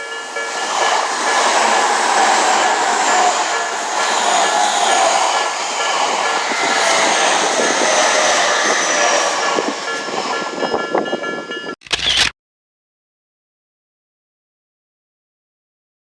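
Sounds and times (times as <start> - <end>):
train wheels rumbling: 0.0 - 11.8.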